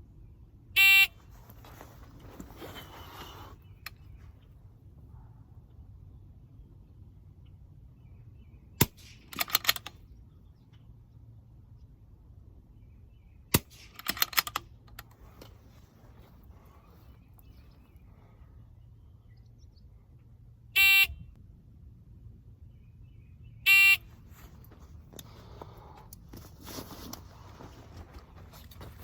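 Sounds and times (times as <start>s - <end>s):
quick run of clicks: 8.9s - 10.0s.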